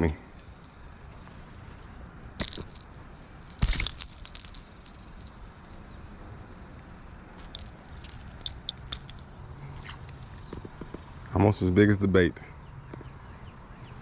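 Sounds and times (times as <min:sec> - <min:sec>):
fishing lure clattering and clicking: 0:03.5 - 0:05.9, 0:07.4 - 0:11.0.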